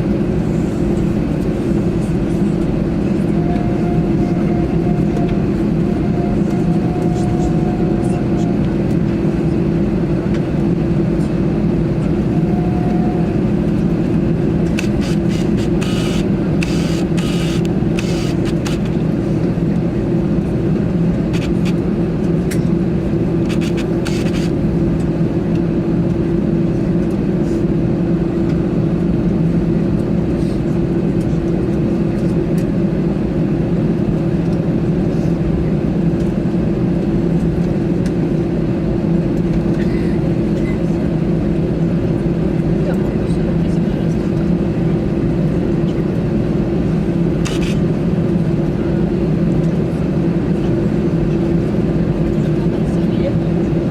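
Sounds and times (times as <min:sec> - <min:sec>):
aircraft cabin engine rumble: 0:00.0 - 0:53.9.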